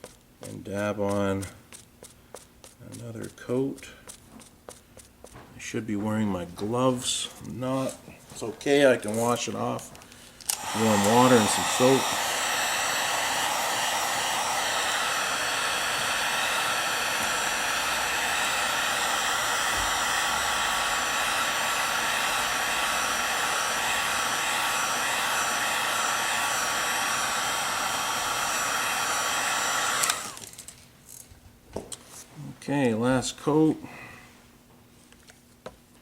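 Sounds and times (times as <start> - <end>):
hair dryer running: 10.5 - 30.6.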